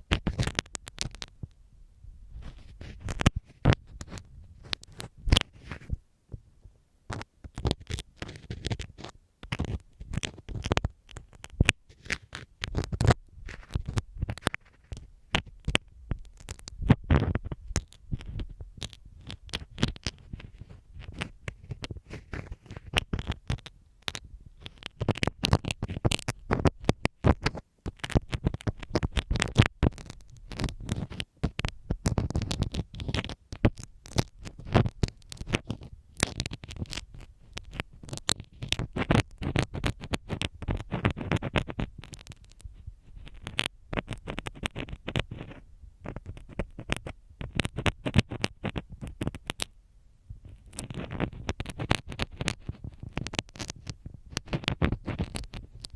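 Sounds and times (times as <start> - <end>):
scratching and rubbing on microphone: 0.0 - 1.6, 2.2 - 6.4, 7.1 - 55.9.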